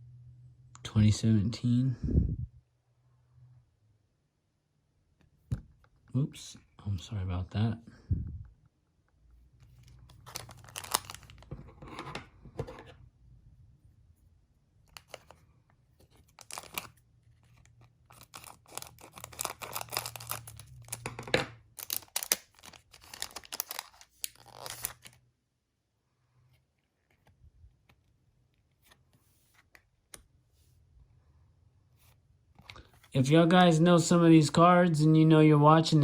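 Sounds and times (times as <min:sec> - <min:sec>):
wrapper tearing and crinkling: 0:10.1 - 0:11.5, 0:16.3 - 0:17.0, 0:18.1 - 0:21.1, 0:21.8 - 0:25.2.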